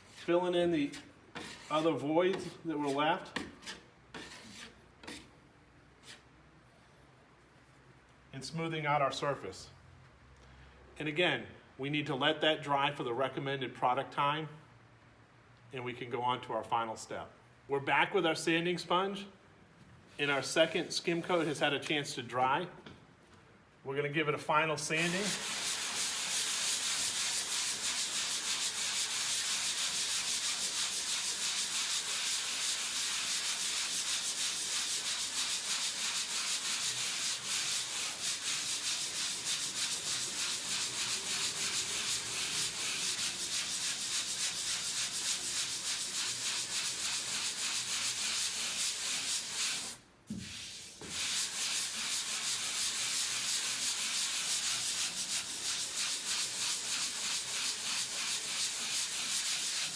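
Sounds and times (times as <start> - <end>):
sanding sponge on drywall: 0.0 - 5.3, 6.0 - 6.3, 20.2 - 21.7, 24.8 - 59.9.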